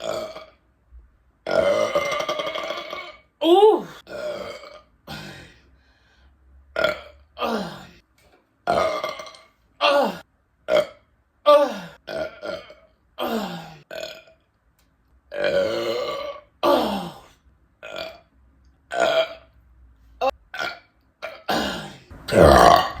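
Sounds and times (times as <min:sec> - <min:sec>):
woman belching: 0:00.0 - 0:00.6, 0:01.5 - 0:04.9, 0:08.7 - 0:10.2, 0:15.3 - 0:17.2, 0:20.2 - 0:23.0.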